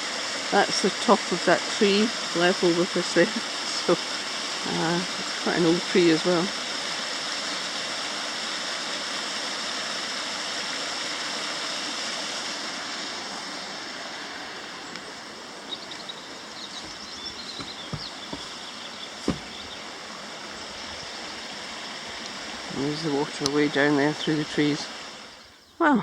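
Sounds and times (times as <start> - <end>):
mountain stream rushing: 0.0 - 25.5
light knocks: 16.8 - 18.6, 19.2 - 19.8.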